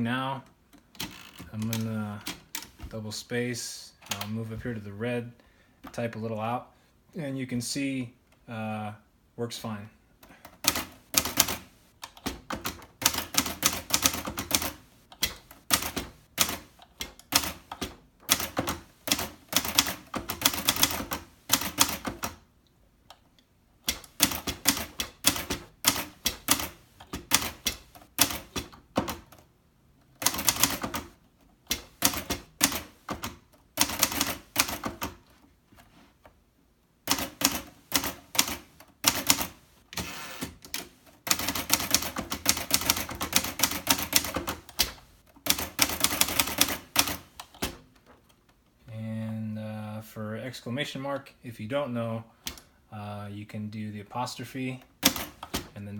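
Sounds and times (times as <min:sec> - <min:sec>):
typewriter keystrokes: 0:10.5 - 0:22.4, 0:23.9 - 0:29.4, 0:30.2 - 0:31.1, 0:31.7 - 0:35.2, 0:37.1 - 0:47.8, 0:55.0 - 0:55.7.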